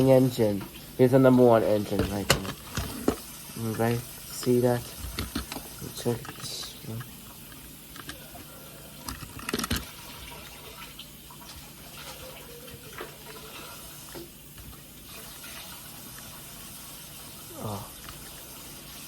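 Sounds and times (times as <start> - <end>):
background hiss: 0.0 - 19.0
clicks and knocks of plastic toy: 9.1 - 9.9.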